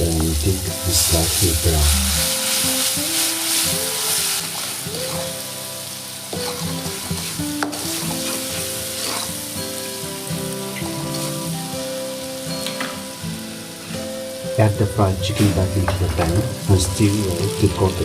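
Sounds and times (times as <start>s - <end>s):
paste sizzling in a pan: 0.0s - 18.0s
stirring in a pan: 1.9s - 5.6s, 6.2s - 9.8s.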